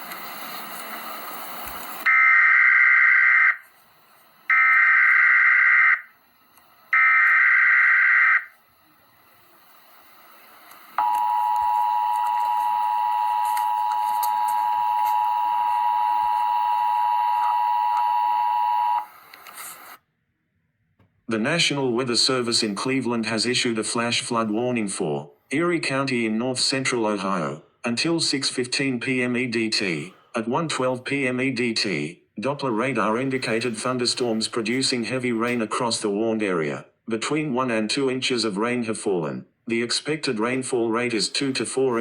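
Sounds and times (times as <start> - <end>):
steady two-tone attention signal: 11.0 - 19.1.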